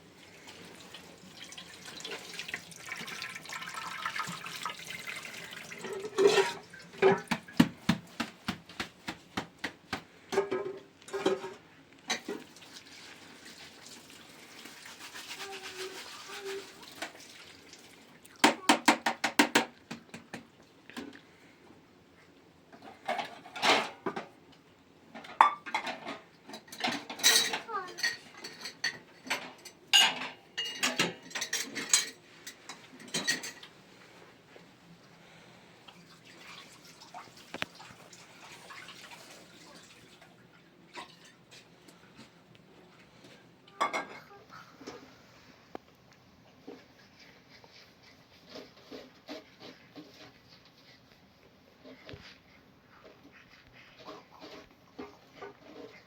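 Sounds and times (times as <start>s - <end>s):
water running: 0.0s - 9.1s, 11.1s - 18.8s, 35.3s - 44.3s
dishes and utensils clinking: 5.7s - 7.7s, 10.3s - 12.5s, 22.8s - 24.4s, 25.2s - 33.8s, 43.7s - 45.1s.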